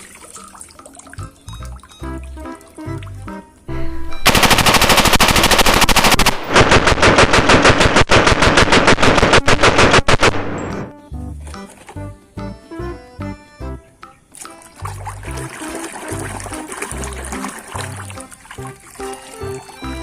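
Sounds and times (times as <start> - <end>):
rapid automatic gunfire: 4.3 - 10.5.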